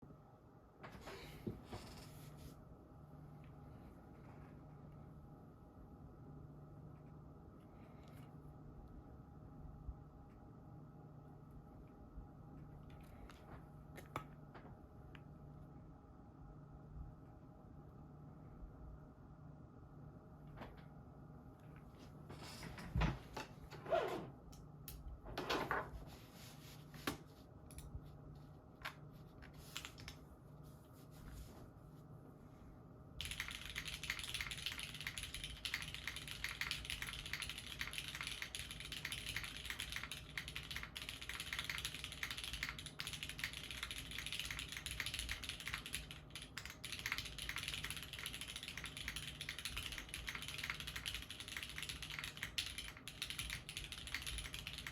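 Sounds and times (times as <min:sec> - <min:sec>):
mechanical keyboard typing: 0:33.2 - 0:54.9.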